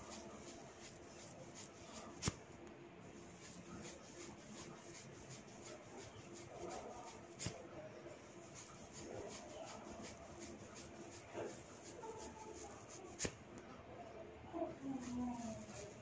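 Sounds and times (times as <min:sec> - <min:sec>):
hands rustling through hair: 0:00.0 - 0:02.5, 0:03.2 - 0:07.6, 0:08.4 - 0:13.4.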